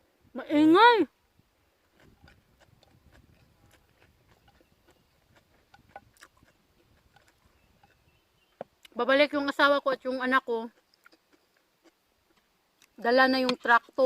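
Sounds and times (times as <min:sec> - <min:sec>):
quiet eating clicks: 0:01.9 - 0:09.0.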